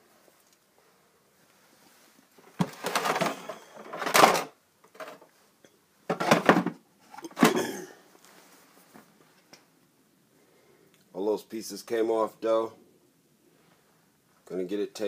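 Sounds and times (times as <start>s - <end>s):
plastic parts clattering: 2.4s - 5.3s, 6.1s - 7.7s.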